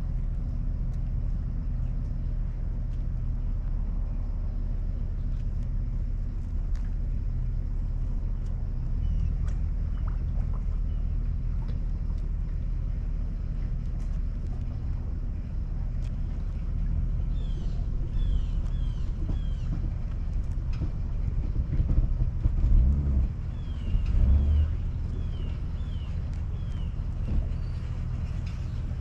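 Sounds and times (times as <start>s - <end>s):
engine idling: 0.0s - 29.0s
bird chirping: 17.3s - 19.8s, 23.6s - 28.9s.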